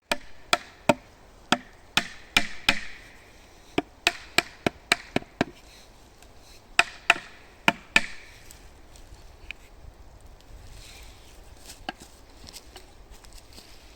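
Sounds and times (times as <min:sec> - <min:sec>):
wood chopping: 0:00.0 - 0:05.6, 0:06.8 - 0:08.6.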